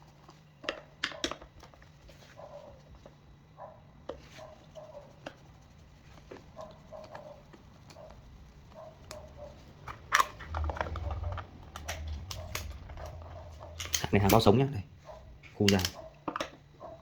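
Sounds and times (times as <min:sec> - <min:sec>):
low rumbling handling noise: 0:06.3 - 0:16.8.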